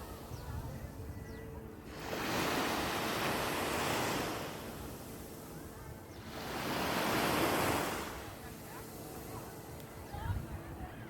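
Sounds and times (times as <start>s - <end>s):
sea waves washing onto beach: 1.8s - 10.6s.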